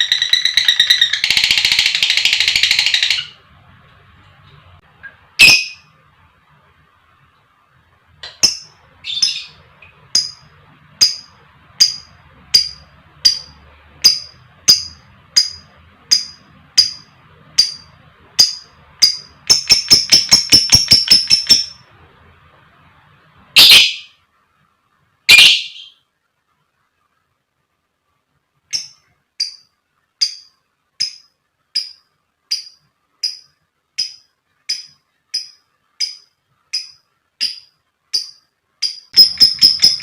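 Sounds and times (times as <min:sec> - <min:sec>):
lovebird chirping: 0:00.0 - 0:03.5, 0:05.4 - 0:05.9, 0:08.2 - 0:21.9, 0:23.5 - 0:24.2, 0:25.3 - 0:26.0, 0:28.7 - 0:40.0.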